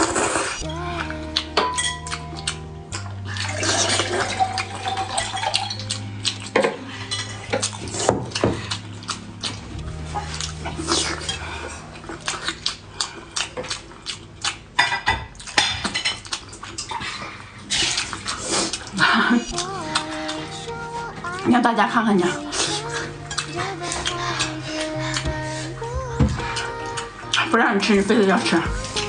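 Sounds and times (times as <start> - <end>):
music with bass notes: 0.0 - 12.4, 22.3 - 29.0
noodles slurped and chewed: 2.1 - 14.8, 15.4 - 20.6, 22.2 - 25.8.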